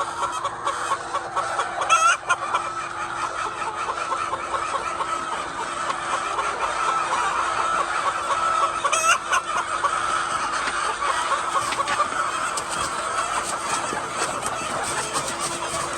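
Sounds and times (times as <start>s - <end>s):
hens clucking: 0.0s - 15.9s.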